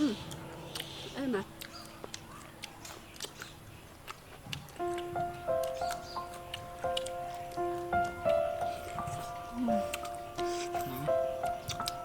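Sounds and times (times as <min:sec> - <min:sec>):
background music: 0:00.0 - 0:02.2, 0:04.8 - 0:12.0.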